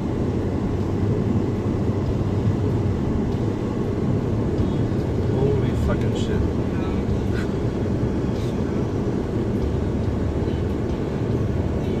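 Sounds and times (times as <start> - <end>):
car engine hum: 0.0 - 12.0
road noise: 0.0 - 12.0.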